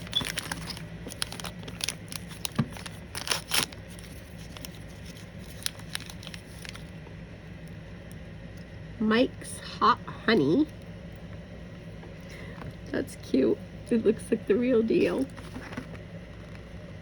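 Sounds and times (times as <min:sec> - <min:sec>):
plastic packaging crinkling and tearing: 0:00.0 - 0:08.2.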